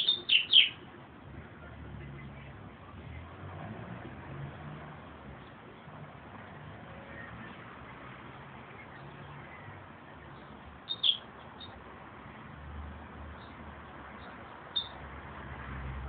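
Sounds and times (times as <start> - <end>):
bird chirping: 0.0 - 0.8, 10.3 - 11.8, 14.2 - 15.0
steady outdoor hiss: 0.0 - 16.0.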